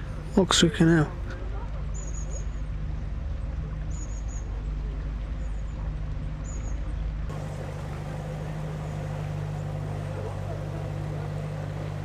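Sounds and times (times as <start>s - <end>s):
boat diesel engine running: 7.3s - 12.0s.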